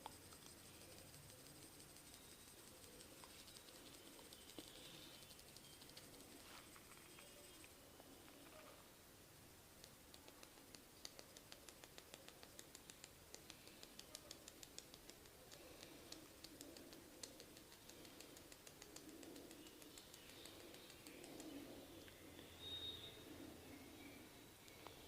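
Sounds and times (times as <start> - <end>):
hands rustling on head: 5.6 - 7.7
faint quick clicking: 9.8 - 22.2.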